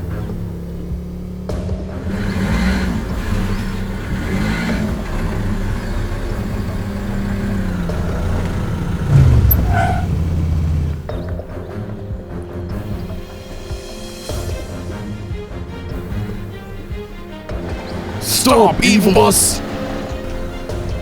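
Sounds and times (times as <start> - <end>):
cartoon engines revving: 2.0 - 11.0.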